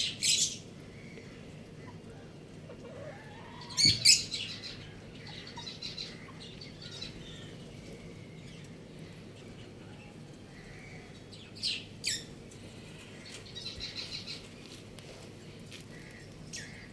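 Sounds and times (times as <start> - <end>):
chicken squawk: 1.8 - 6.4
chicks cheeping: 1.8 - 14.8.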